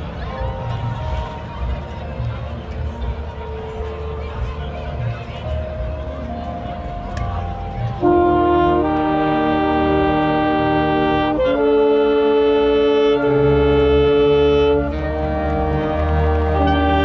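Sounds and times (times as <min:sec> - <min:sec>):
marching band brass chords: 0:07.9 - 0:17.0.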